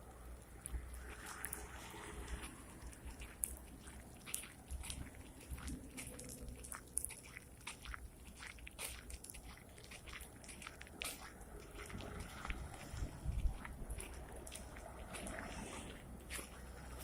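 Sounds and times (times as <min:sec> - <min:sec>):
small clicks and crackles: 0:00.0 - 0:17.0
wind buffeting microphone: 0:10.0 - 0:17.0.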